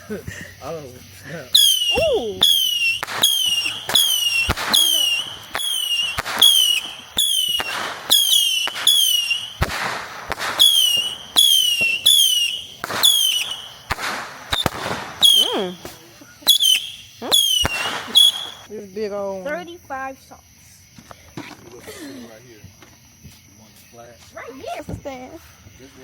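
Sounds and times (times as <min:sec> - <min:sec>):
whistling firework shots: 0:01.4 - 0:18.7.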